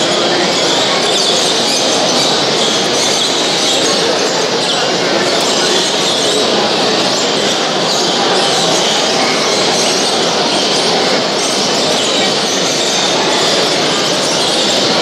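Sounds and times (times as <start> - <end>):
caged birds chirping and singing: 0.0 - 15.0
murmur of people: 0.0 - 15.0.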